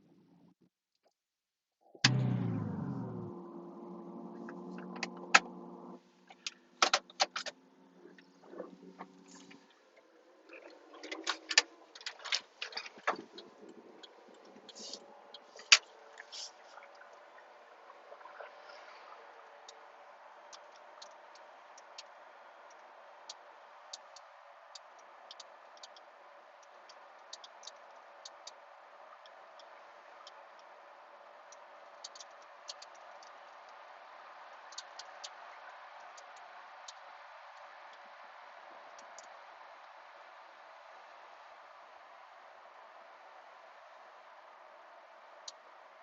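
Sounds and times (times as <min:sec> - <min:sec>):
car road and cabin noise: 0:02.0 - 0:46.0
sharp ticks and clicks: 0:19.4 - 0:30.8, 0:31.4 - 0:38.0.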